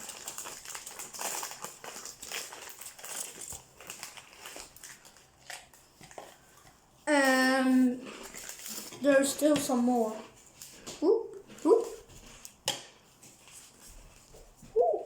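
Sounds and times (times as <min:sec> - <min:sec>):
packaging crinkling: 0:00.0 - 0:06.6, 0:08.0 - 0:09.3.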